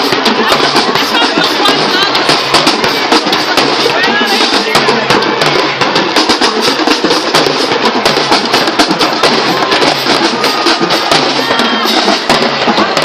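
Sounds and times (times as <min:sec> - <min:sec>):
bass drums: 0:00.0 - 0:13.0.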